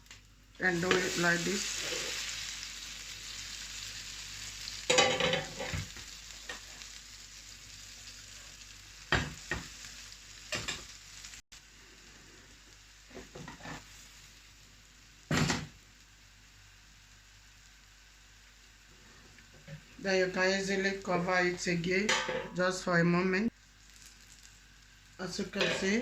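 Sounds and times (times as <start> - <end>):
omelette sizzling in frying pan: 0.0 - 22.2, 23.5 - 26.0.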